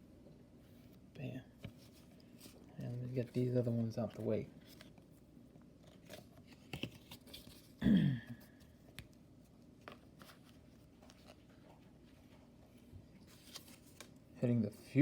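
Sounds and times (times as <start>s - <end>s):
trading cards tapping and rustling: 5.8s - 7.8s.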